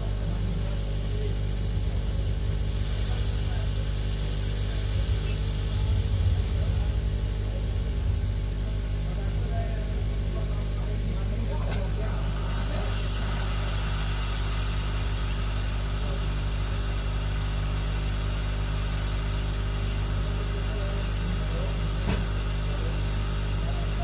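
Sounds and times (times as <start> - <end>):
hot-air station hissing: 0.0 - 24.0
low hum: 4.5 - 11.4.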